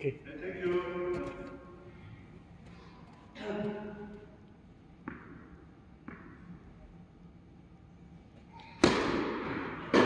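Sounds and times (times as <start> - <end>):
racket hitting tennis ball: 5.0 - 6.4, 8.6 - 10.0.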